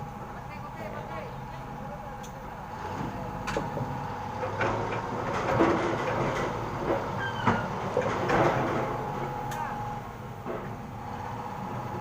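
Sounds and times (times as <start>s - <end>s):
heavy machinery running: 0.0s - 12.0s
metal clanks and knocks: 4.5s - 9.0s.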